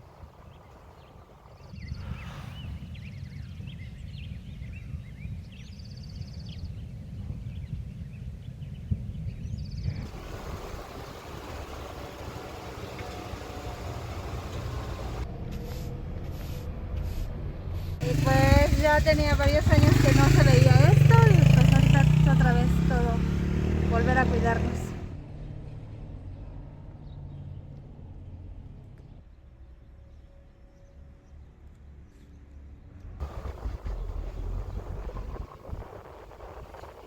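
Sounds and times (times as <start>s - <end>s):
low rumble: 33.2s - 37.0s
steady rushing noise: 33.2s - 37.0s.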